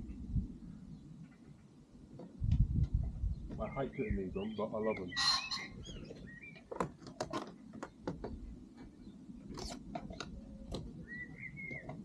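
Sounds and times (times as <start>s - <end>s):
bird chirping: 3.2s - 6.8s, 8.9s - 12.0s
plastic clicks creaks and scrapes: 6.6s - 11.0s.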